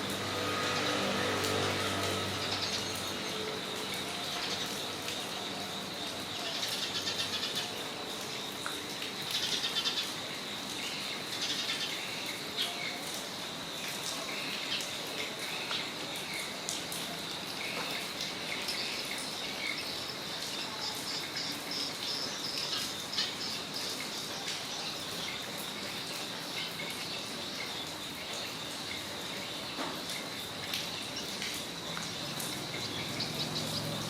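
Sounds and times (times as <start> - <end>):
rain hissing: 0.0 - 34.0
water drips: 0.0 - 34.0
birds chirping: 31.0 - 34.0.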